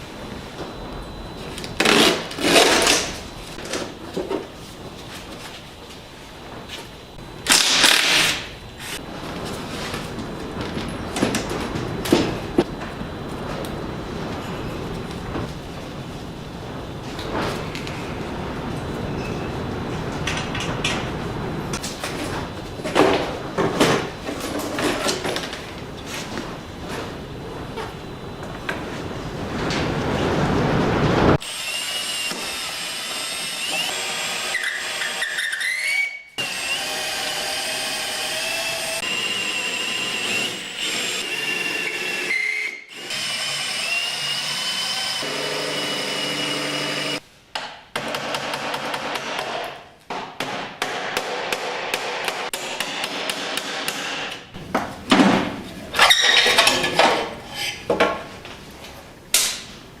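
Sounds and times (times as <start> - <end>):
electric drill whining: 31.4 - 47.2.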